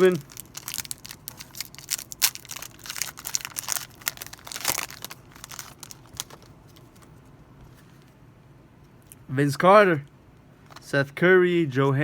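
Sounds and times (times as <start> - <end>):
plastic wrapper tearing and crinkling: 0.0 - 7.0.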